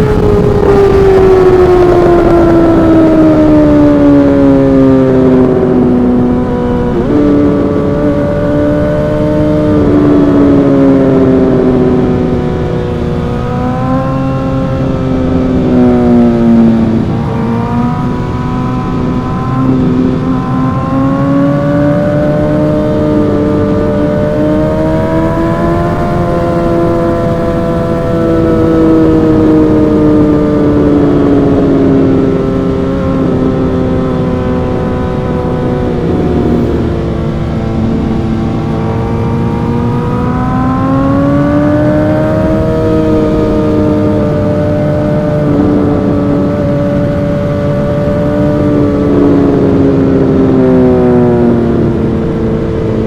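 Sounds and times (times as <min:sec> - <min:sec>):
motorcycle engine revving: 0:00.0 - 0:53.0.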